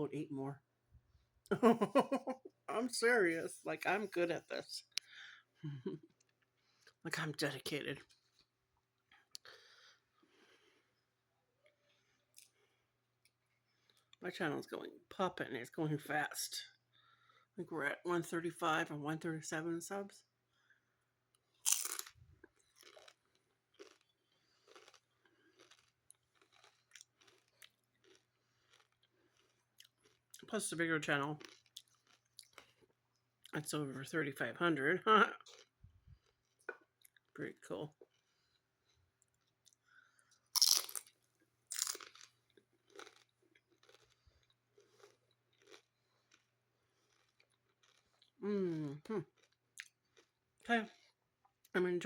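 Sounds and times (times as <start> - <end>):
chewing crunchy chips: 11.8 - 14.2, 21.3 - 30.5, 31.4 - 33.6, 35.4 - 51.7.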